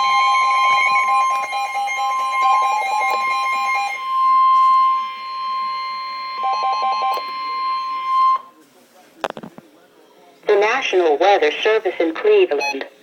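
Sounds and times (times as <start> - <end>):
continuous high alert tone: 0.0 - 8.6.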